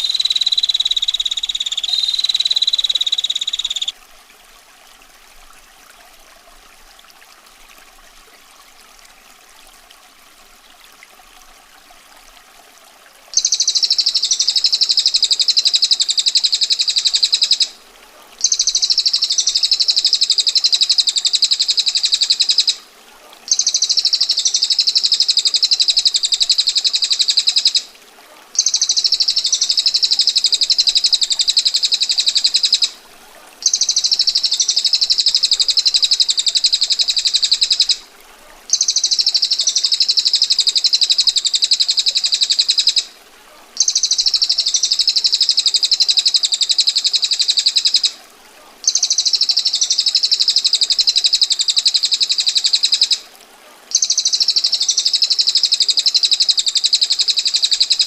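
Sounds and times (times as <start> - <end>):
bird giving harsh trills: 0.0 - 3.9
faint running water: 0.0 - 58.0.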